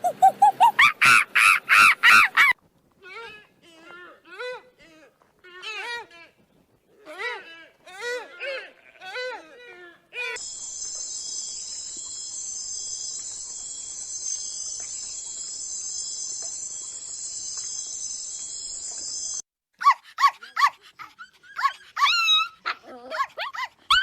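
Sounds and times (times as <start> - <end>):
dog yipping: 0.0 - 2.6, 19.8 - 20.8, 21.5 - 24.0
high-pitched buzzing drone: 10.4 - 19.4.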